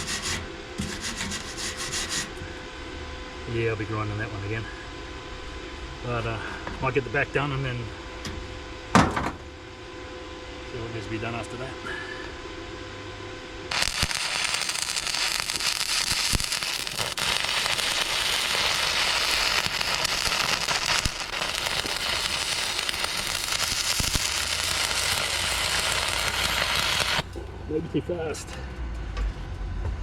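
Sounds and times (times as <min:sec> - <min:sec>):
arc welding crackle: 0:00.0 - 0:02.4, 0:13.7 - 0:27.5.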